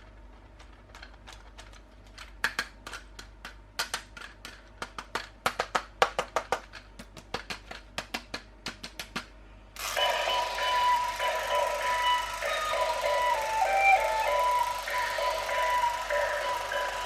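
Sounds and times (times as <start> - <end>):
plastic packaging clicks and taps: 2.4 - 9.3
loud electronic music: 10.0 - 17.0.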